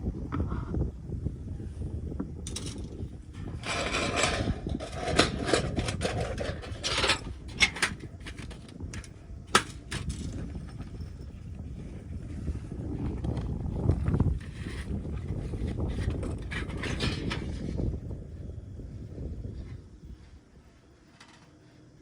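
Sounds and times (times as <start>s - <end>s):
low wind rumble: 0.0s - 21.1s
objects scraping and rustling: 2.5s - 11.2s, 13.2s - 17.9s.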